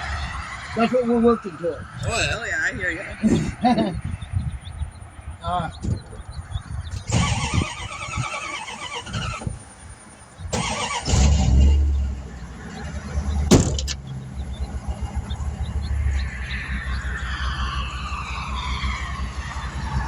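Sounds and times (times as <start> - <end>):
high-pitched squealing: 0.0 - 4.9, 5.9 - 20.0
sharp knock: 13.5 - 14.0.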